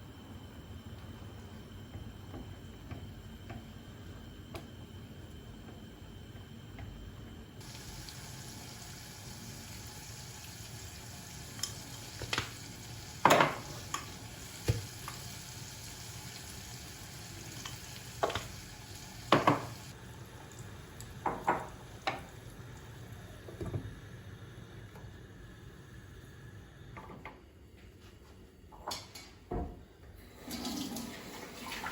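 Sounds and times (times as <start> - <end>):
faint steady hiss: 3.8 - 28.5.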